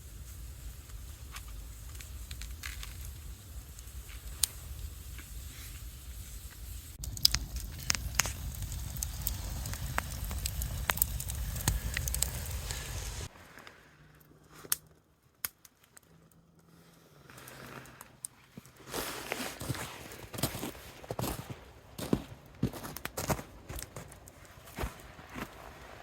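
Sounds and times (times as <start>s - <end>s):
campfire crackling and popping: 0.0s - 13.3s, 22.0s - 26.0s
low rumble: 6.9s - 13.3s.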